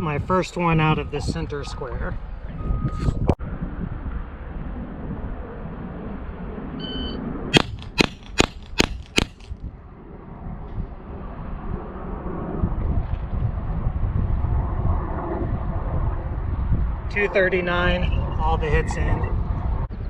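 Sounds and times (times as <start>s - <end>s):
pistol shots: 7.6s - 9.6s.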